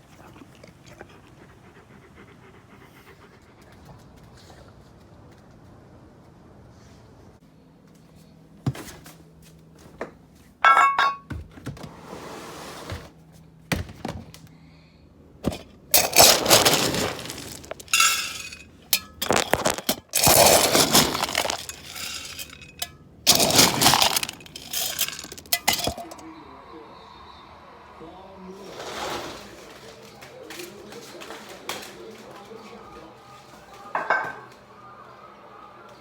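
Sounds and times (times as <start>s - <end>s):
hard objects clattering: 15.4s - 26.2s.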